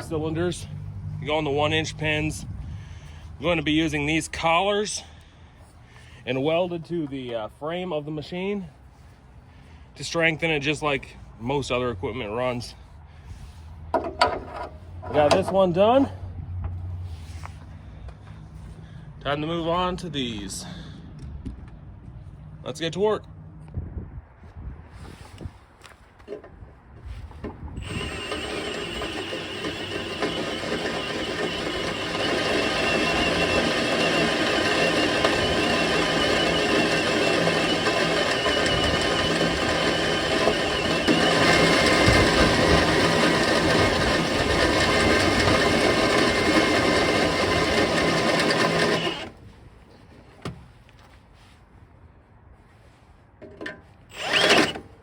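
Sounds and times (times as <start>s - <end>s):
electric drill boring steel: 27.8s - 49.4s, 54.1s - 54.9s.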